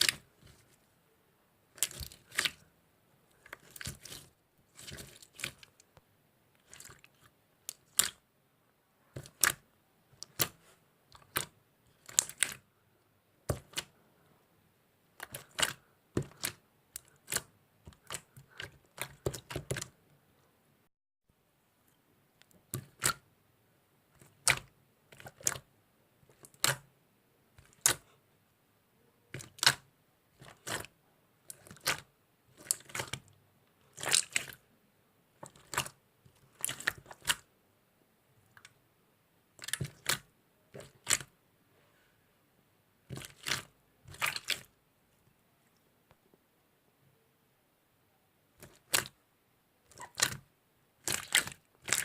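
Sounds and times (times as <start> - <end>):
slime squishing and crackling: 0.0 - 0.8, 1.7 - 2.6, 3.3 - 5.9, 6.6 - 8.2, 9.1 - 9.6, 10.2 - 12.7, 13.5 - 13.9, 15.2 - 20.0, 22.6 - 23.2, 24.2 - 25.7, 26.3 - 26.9, 27.6 - 28.1, 29.3 - 34.6, 35.4 - 37.5, 39.5 - 41.3, 43.1 - 44.7, 48.6 - 49.2, 49.9 - 50.4, 51.0 - 52.0.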